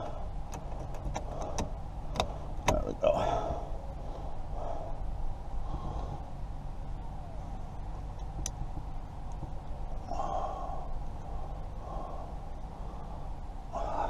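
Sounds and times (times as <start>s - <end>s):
steady low hum: 0.0s - 14.0s
person breathing out heavily: 1.3s - 6.4s, 10.1s - 14.0s.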